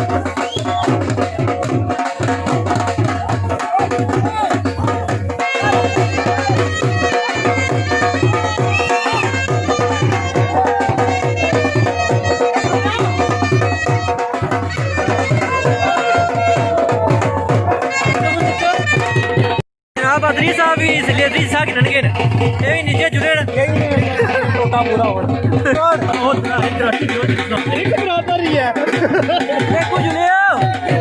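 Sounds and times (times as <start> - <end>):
drum beating folk rhythm: 0.0 - 31.0
wind instruments wavering melody: 5.4 - 19.6.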